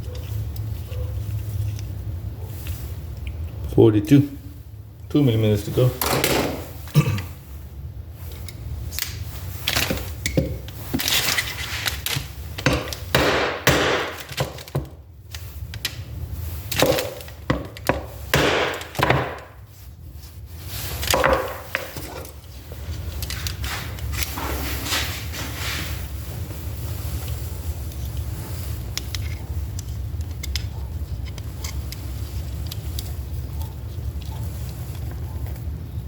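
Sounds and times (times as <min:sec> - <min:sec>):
metal tools knocking and scraping: 0:06.0 - 0:07.2.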